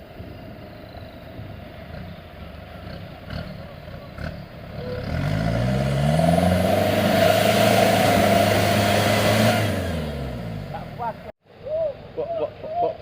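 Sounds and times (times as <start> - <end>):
engine at high revs: 2.8 - 11.3.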